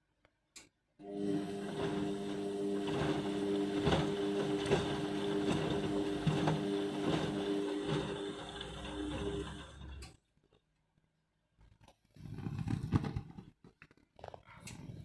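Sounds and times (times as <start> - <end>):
washing machine motor whine: 1.0 - 10.2.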